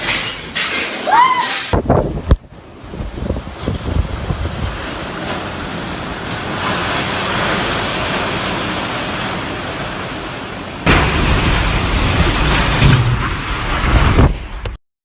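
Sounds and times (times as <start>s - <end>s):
wind rushing: 1.8s - 5.0s
wind buffeting on microphone: 1.8s - 5.8s.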